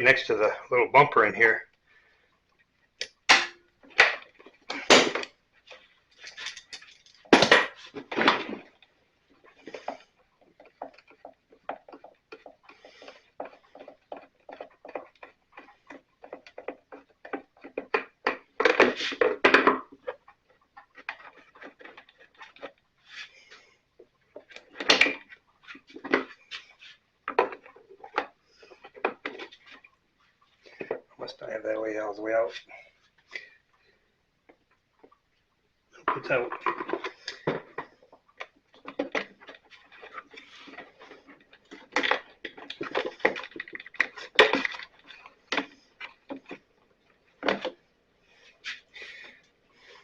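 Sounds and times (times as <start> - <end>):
hand tools clicking on plastic: 8.6 - 22.8, 36.1 - 47.8.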